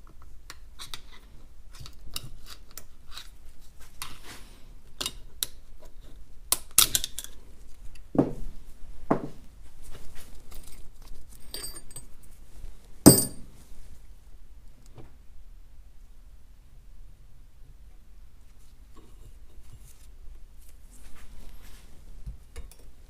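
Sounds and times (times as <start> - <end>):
metal parts and tools clinking: 10.5 - 12.1.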